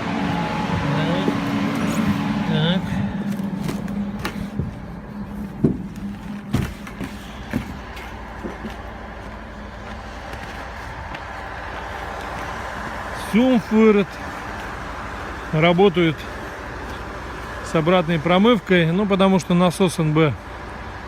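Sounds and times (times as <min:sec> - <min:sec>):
drilling rig machinery hum: 0:00.0 - 0:21.0
knocks and clunks: 0:03.2 - 0:08.9.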